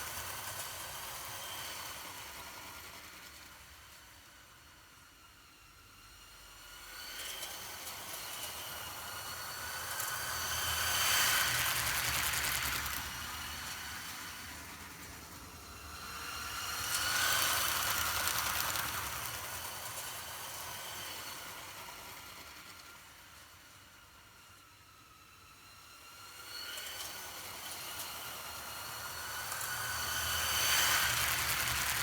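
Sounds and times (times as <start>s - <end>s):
toy train motors whining: 7.4s - 15.2s, 16.0s - 23.2s, 26.7s - 32.0s.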